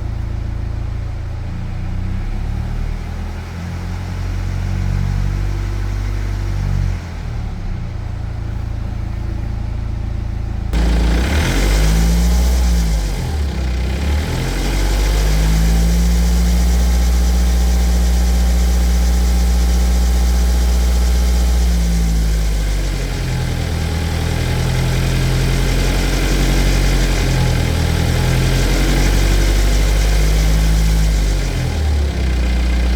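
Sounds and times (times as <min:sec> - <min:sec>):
diesel engine running: 0:07.2 - 0:32.9.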